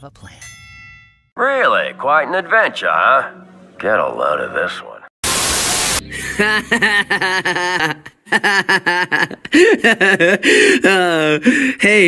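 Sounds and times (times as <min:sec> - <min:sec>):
person laughing: 0:06.1 - 0:11.5.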